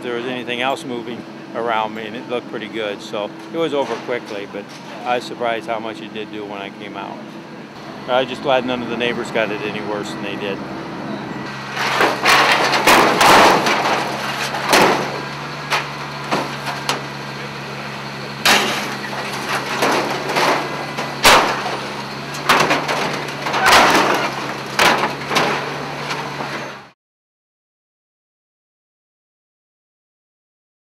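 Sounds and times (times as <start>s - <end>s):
low hum: 0.0s - 26.8s
knocks and clattering: 11.7s - 17.3s, 18.4s - 26.8s.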